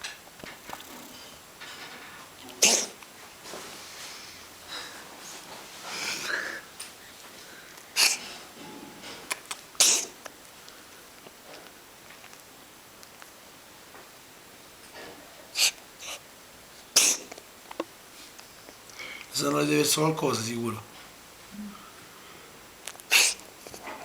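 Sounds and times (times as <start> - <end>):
cat sneezing: 2.5 - 3.0, 7.9 - 8.4, 9.8 - 10.2, 15.5 - 16.2, 16.9 - 17.4, 23.1 - 23.5.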